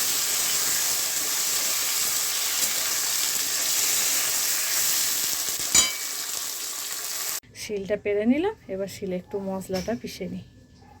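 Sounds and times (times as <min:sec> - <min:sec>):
vegetables sizzling in hot oil: 0:00.0 - 0:07.4.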